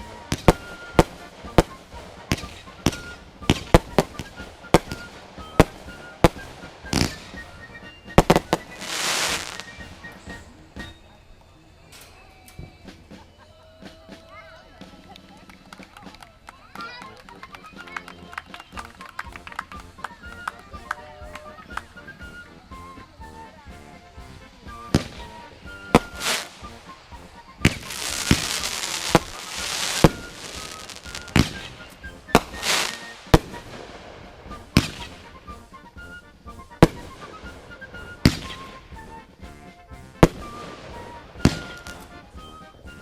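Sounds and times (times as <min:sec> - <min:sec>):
firework bangs: 0:00.0 - 0:10.4, 0:24.8 - 0:36.0, 0:36.7 - 0:39.3, 0:40.1 - 0:42.3
hissing crackle: 0:24.5 - 0:35.9.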